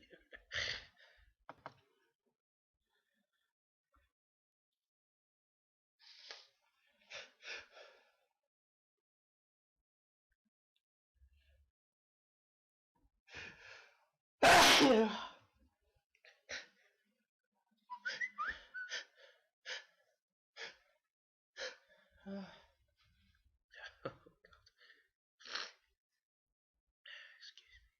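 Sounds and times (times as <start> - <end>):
person sneezing: 14.4 - 15.2.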